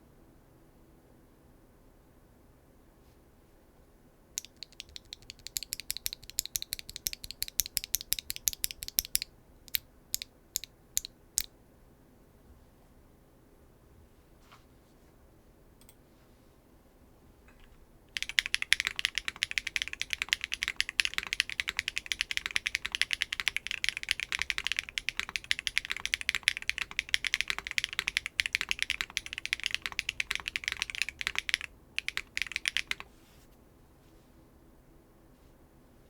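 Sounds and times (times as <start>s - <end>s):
clacky mechanical keyboard typing: 4.4s - 9.3s, 18.2s - 33.1s.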